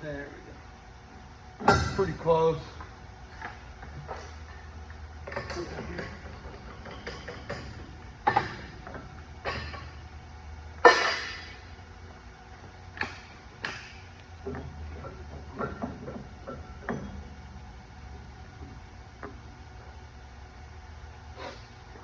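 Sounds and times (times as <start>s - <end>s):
tools knocking and clanking: 5.2s - 10.0s, 13.0s - 17.4s.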